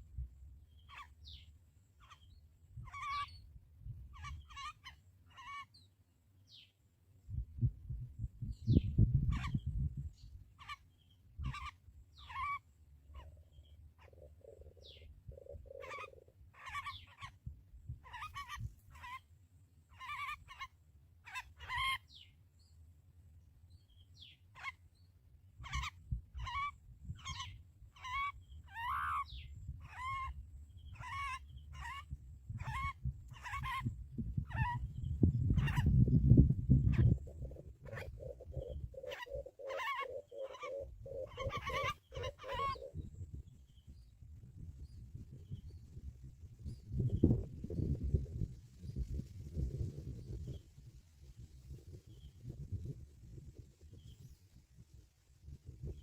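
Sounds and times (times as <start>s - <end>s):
bird chirping: 0.6s - 6.8s, 8.4s - 19.2s, 19.9s - 22.8s, 23.6s - 48.2s.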